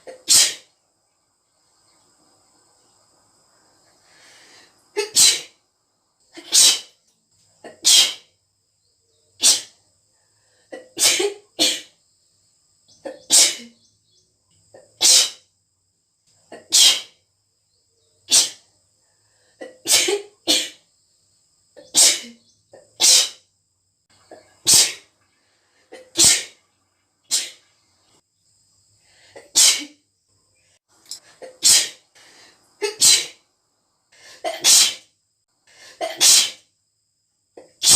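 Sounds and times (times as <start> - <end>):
girl sneezing: 0.1 - 0.7, 5.0 - 5.6, 6.4 - 7.0, 7.7 - 8.3, 9.4 - 9.8, 10.9 - 11.9, 13.1 - 13.8, 15.0 - 15.4, 16.6 - 17.2, 18.3 - 18.6, 19.6 - 20.8, 21.8 - 22.4, 23.0 - 23.4, 24.6 - 25.0, 25.9 - 26.6, 27.3 - 27.6, 29.4 - 30.0, 31.4 - 32.0, 32.8 - 33.4, 34.4 - 35.1, 35.9 - 36.6
girl inhaling: 4.0 - 4.8.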